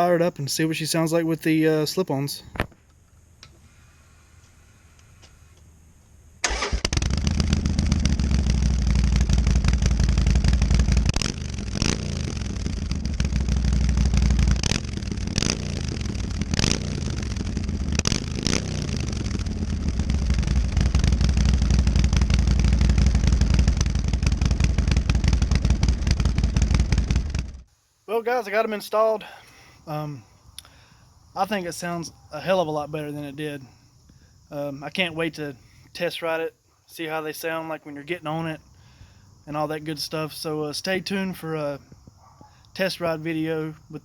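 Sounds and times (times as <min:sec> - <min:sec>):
motorcycle engine idling and revving: 0:06.5 - 0:27.7.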